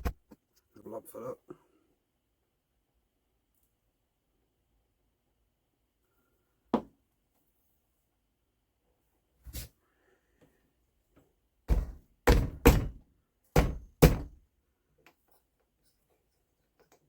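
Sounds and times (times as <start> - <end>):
wooden pieces thunking: 11.7 - 14.4.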